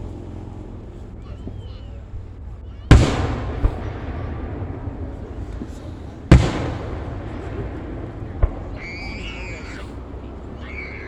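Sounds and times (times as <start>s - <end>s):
small firework pops: 1.0s - 11.0s
firework bang with rumble: 2.8s - 11.0s.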